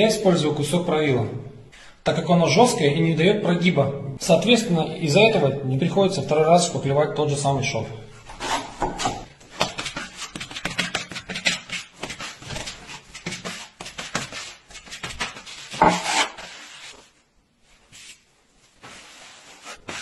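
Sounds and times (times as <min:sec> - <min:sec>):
straightedge scraping filler on drywall: 0:08.3 - 0:17.0, 0:18.9 - 0:20.0.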